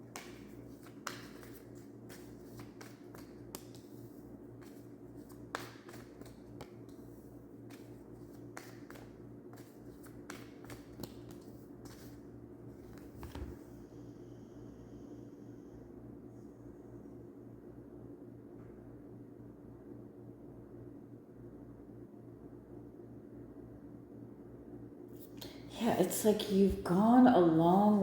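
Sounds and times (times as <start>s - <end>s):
hands handling cards: 0.0s - 12.2s
low steady hum: 0.0s - 28.0s.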